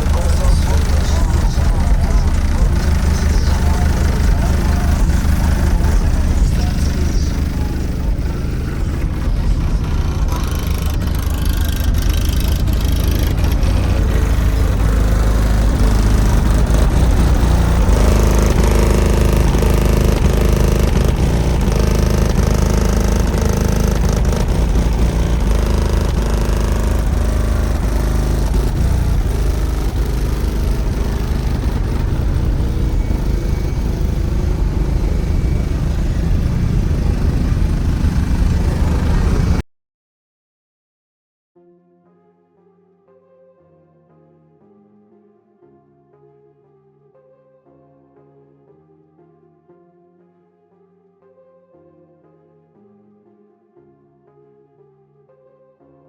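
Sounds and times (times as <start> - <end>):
bass-heavy music from subwoofers: 0.0 - 39.5.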